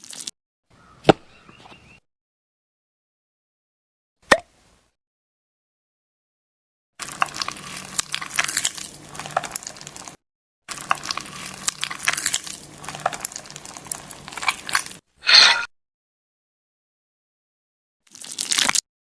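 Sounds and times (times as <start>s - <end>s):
slime crunching and crackling: 7.0s - 15.0s, 18.1s - 18.8s.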